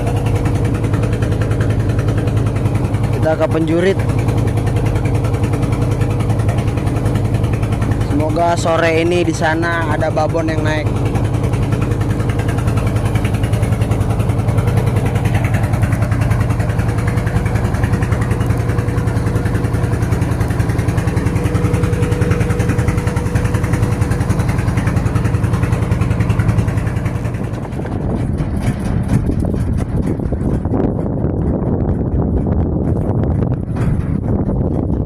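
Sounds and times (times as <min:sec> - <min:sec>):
boat engine rumbling: 0:00.0 - 0:35.0.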